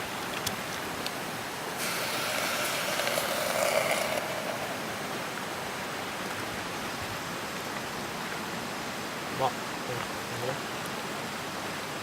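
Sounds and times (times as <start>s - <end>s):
river flowing: 0.0s - 12.0s
soup being poured into a pot: 1.8s - 5.6s.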